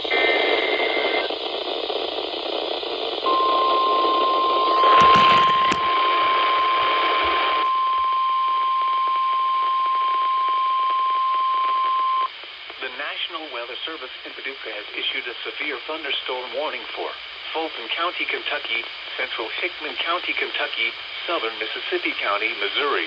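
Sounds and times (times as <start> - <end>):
radio static hiss: 0.0 - 7.7, 11.6 - 23.0
steady alarm tone: 3.3 - 7.6.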